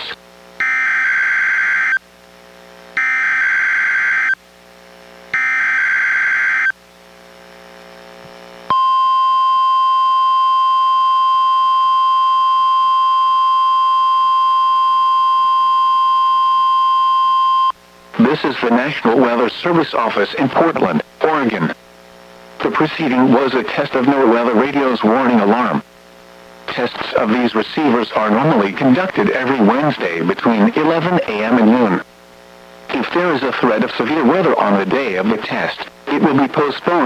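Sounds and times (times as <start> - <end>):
steady warning alarm tone: 0.0 - 2.0, 3.0 - 4.4, 5.4 - 6.7, 8.7 - 17.8
warbling data buzz: 3.0 - 4.4, 5.3 - 6.8.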